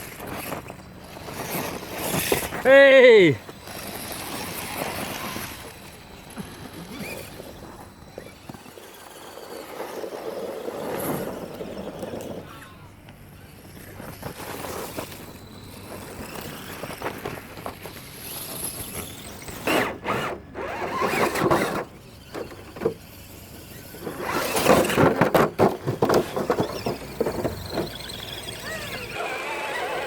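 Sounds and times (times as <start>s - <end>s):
electric motor whining: 26.4s - 30.0s.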